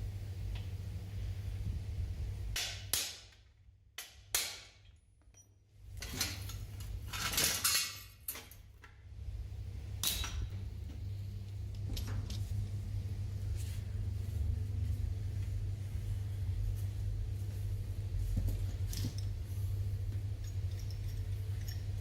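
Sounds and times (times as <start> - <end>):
low steady hum: 0.0 - 22.0
metal tools clinking: 5.2 - 8.7, 20.4 - 22.0.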